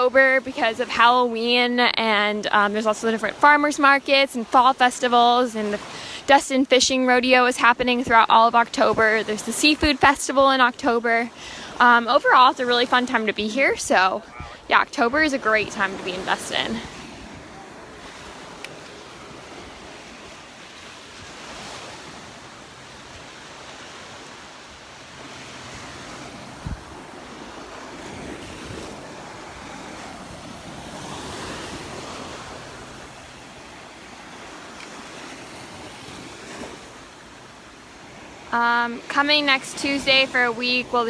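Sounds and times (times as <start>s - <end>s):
surf washing onto beach: 0.0s - 41.0s
wind on microphone: 24.0s - 37.0s.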